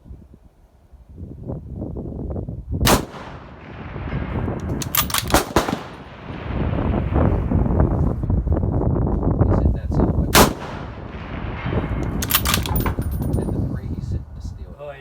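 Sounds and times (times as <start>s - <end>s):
rifle shots with echo: 2.9s - 7.9s, 10.3s - 13.7s.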